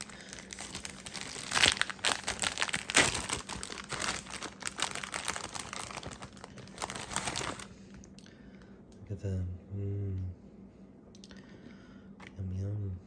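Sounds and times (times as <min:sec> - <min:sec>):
plastic packaging crinkling: 0:00.0 - 0:07.8.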